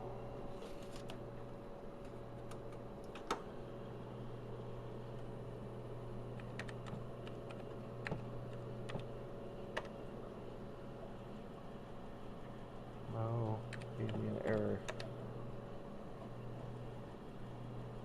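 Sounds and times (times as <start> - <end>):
computer low hum: 0.0 - 18.0
clicky keyboard keystrokes: 6.4 - 8.3, 8.9 - 9.1.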